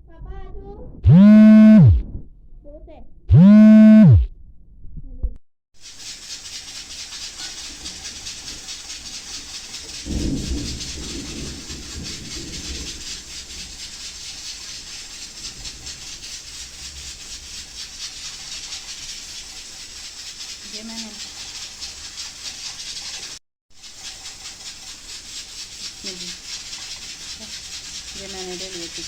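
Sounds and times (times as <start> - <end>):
low rumble: 0.0 - 5.4
gliding electronic tone: 1.1 - 2.2, 3.3 - 4.3
steady hiss: 5.8 - 29.0.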